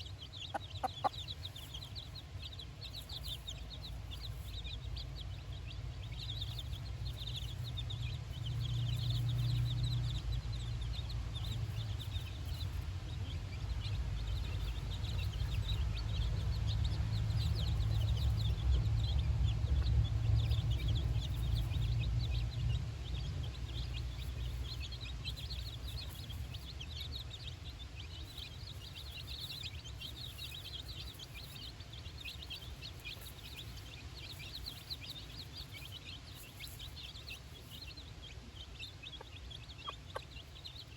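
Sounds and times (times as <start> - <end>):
chicks peeping: 0.0 - 40.9
low rumble: 4.7 - 27.8.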